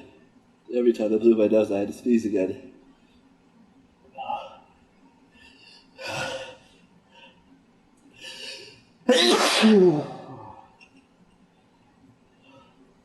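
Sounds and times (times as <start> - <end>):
man sneezing: 9.1 - 10.5.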